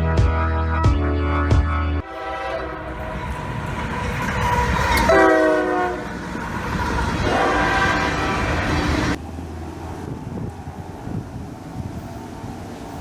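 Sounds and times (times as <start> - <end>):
locomotive horn chord: 0.0 - 3.4, 4.5 - 6.1, 7.2 - 9.2
low rumble of train: 2.0 - 13.0.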